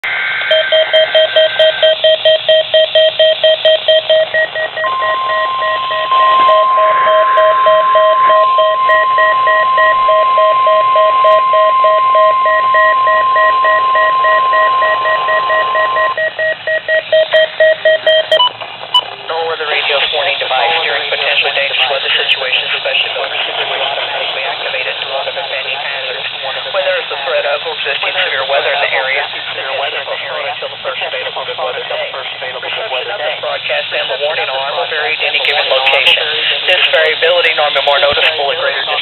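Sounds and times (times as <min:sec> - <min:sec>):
steady alarm tone: 0:00.0 - 0:18.5
rapid alert beeping: 0:00.5 - 0:19.0.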